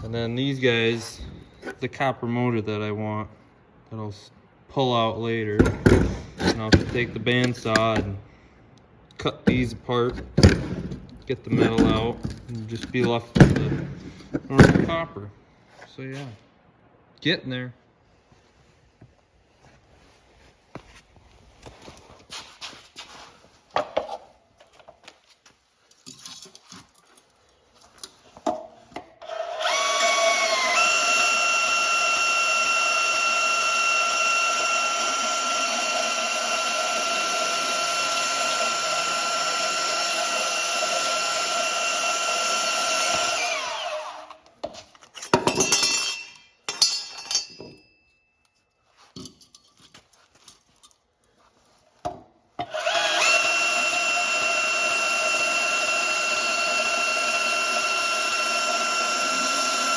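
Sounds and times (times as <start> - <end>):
power tool motor whining: 29.2 - 44.4, 52.6 - 59.9.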